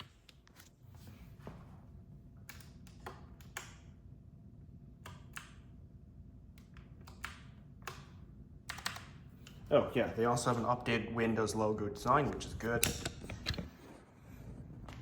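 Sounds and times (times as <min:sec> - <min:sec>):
keyboard clicks and taps: 0:06.5 - 0:09.2.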